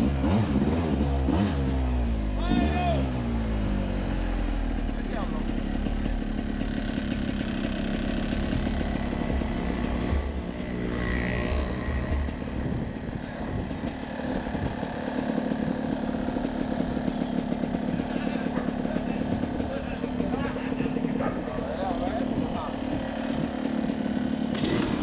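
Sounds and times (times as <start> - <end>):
off-road vehicle engine droning: 0.0 - 25.0.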